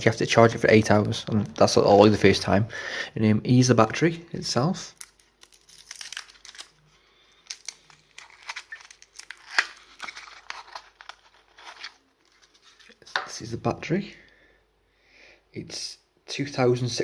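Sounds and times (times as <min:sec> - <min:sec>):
packaging crinkling and rustling: 0:05.0 - 0:13.2.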